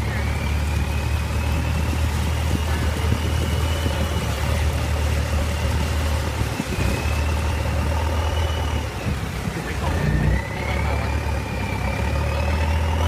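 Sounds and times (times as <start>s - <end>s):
boat engine drone: 0.0s - 13.0s.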